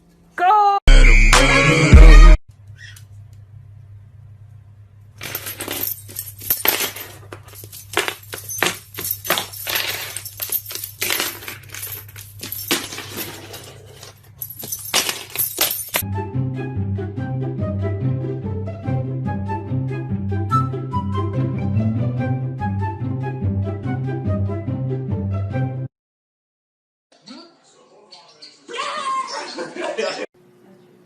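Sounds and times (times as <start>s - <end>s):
small hard objects clinking: 5.2s - 16.0s.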